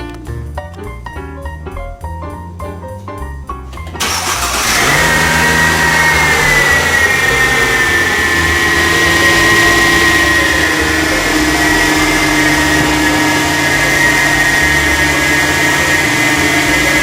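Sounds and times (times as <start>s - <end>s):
engine rumble: 1.8s - 17.0s
transmission whine: 3.7s - 17.0s.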